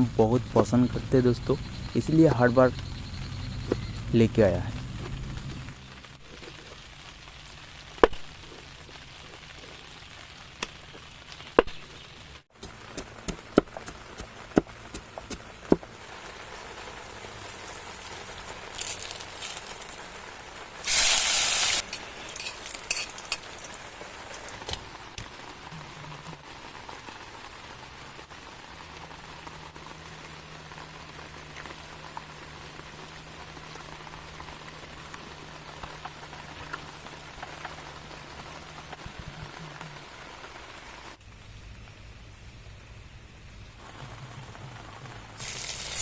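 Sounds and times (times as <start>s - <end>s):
pork sizzling in a pot: 0.2s - 25.8s, 45.3s - 46.0s
loud burst of hissing: 20.8s - 22.4s, 45.4s - 46.0s.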